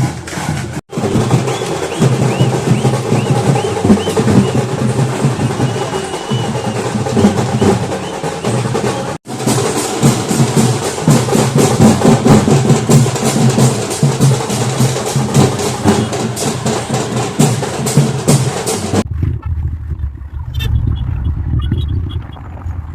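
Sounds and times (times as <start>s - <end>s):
drums beaten fast: 0.0s - 19.5s
low rumble: 19.0s - 22.9s.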